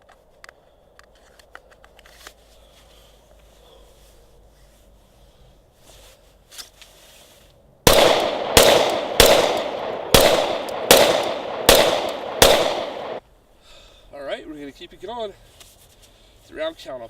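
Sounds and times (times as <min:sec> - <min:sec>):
gun handling clicks: 0:07.9 - 0:13.2
pistol shots: 0:07.9 - 0:13.2.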